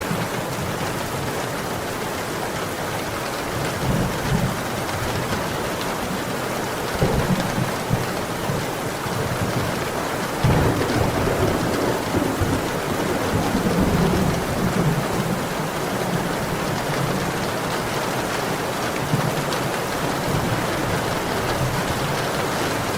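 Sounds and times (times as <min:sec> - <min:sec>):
heavy rain: 0:00.0 - 0:22.9
rolling thunder: 0:06.9 - 0:17.4.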